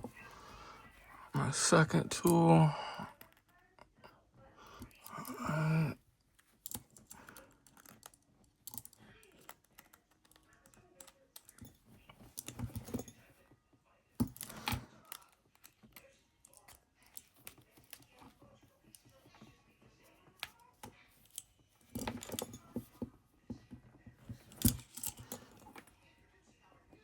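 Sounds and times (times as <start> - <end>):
handcuffs clicking and rattling: 4.8 - 13.3, 14.2 - 18.3, 20.3 - 23.0, 24.2 - 25.9.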